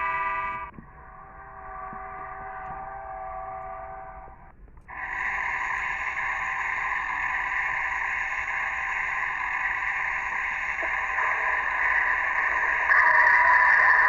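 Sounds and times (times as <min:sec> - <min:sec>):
train horn blast: 0:01.7 - 0:04.4.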